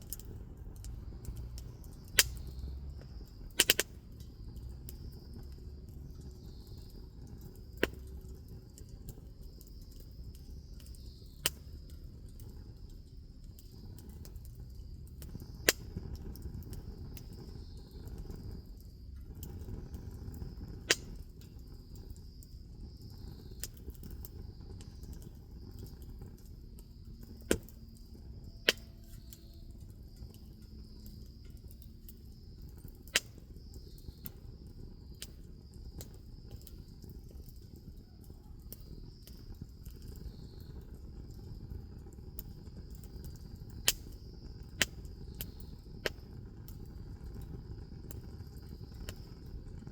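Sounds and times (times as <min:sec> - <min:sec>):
wood cracking pops: 0:00.0 - 0:06.2, 0:07.5 - 0:12.5, 0:15.2 - 0:17.4, 0:19.2 - 0:21.6, 0:23.4 - 0:29.6, 0:32.8 - 0:34.4, 0:42.8 - 0:46.9
bonfire burning: 0:00.0 - 0:49.9
insects chirring: 0:00.0 - 0:49.9.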